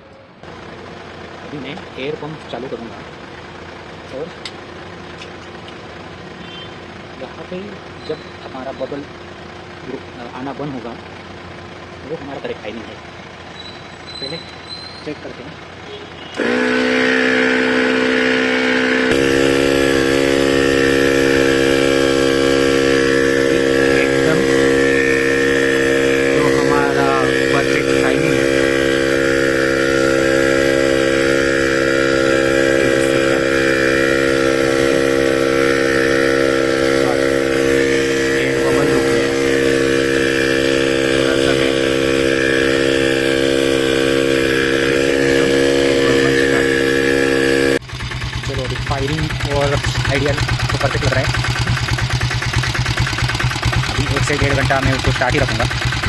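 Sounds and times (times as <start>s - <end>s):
diesel engine idling: 0.0s - 56.0s
electric air pump buzzing: 16.3s - 56.0s
deeper hum: 16.4s - 56.0s.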